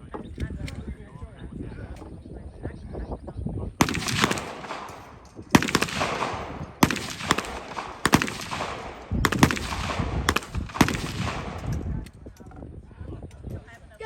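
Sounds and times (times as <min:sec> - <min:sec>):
sharp gunshots with echo: 0:03.8 - 0:12.0.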